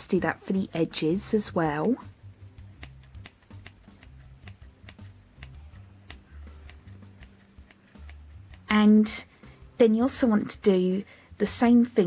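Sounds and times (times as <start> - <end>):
quiet background music: 0.0 - 12.0
scissors snipping foam: 2.6 - 8.7.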